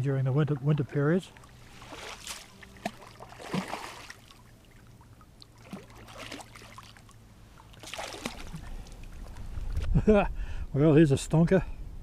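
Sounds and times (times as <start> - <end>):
light water splashing: 1.3 - 9.8.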